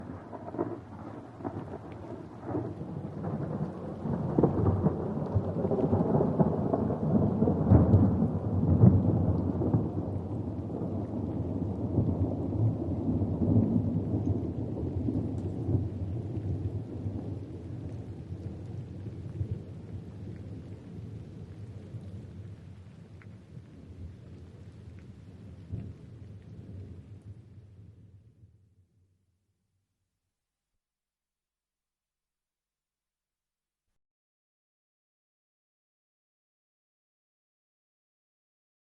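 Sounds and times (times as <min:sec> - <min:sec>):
thunder rolling: 0:00.0 - 0:19.4
falling rain: 0:00.0 - 0:28.2.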